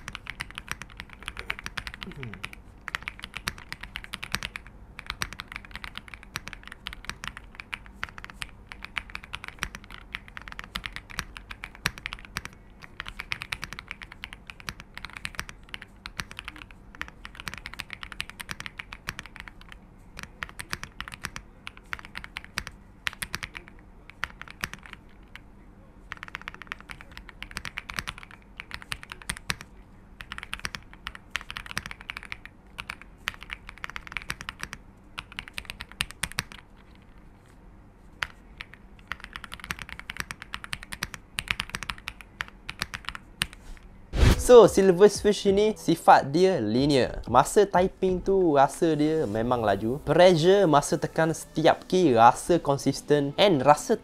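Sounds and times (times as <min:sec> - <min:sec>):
typing on mechanical keyboard: 0:00.0 - 0:25.4, 0:26.1 - 0:37.2, 0:38.2 - 0:43.6.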